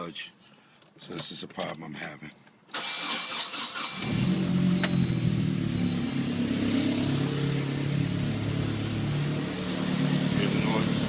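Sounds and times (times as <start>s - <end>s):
car engine cranking and starting: 2.7s - 11.0s
engine running with loud abnormal noise: 4.0s - 11.0s.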